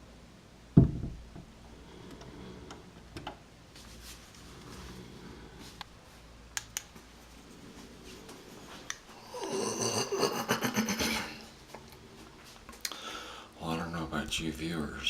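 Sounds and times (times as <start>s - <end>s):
sharp clicks: 6.6s - 7.0s.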